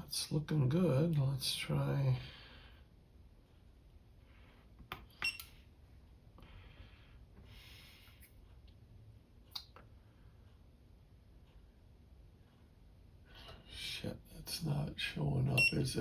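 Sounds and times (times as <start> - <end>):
soft breaths: 2.0 - 8.8, 9.8 - 14.8.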